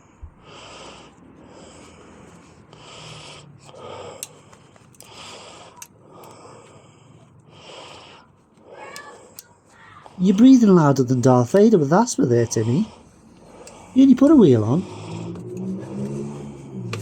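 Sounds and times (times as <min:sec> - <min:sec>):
person breathing heavily: 0:00.0 - 0:17.0.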